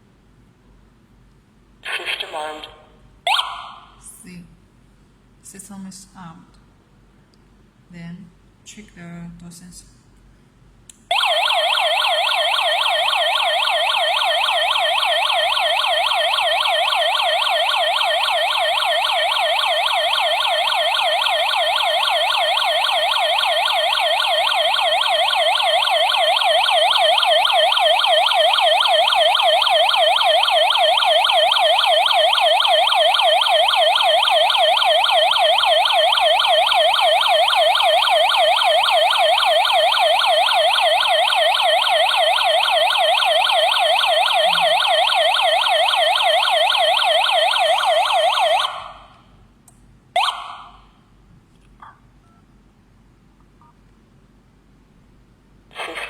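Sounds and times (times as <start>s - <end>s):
electronic alarm siren wailing: 3.3s - 4.0s, 11.1s - 49.1s, 50.2s - 50.8s.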